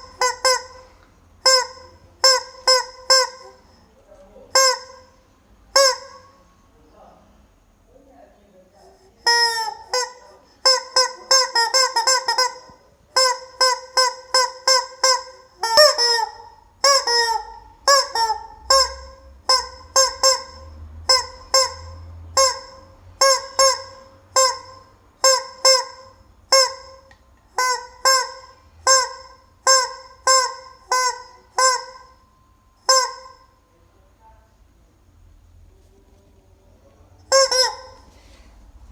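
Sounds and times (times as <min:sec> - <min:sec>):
rubber chicken squawking: 0:09.3 - 0:27.0, 0:37.3 - 0:38.1.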